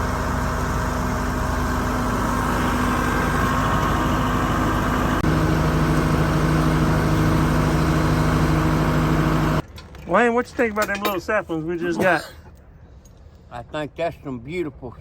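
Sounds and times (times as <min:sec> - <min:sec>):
vehicle engine running: 0:00.0 - 0:09.6.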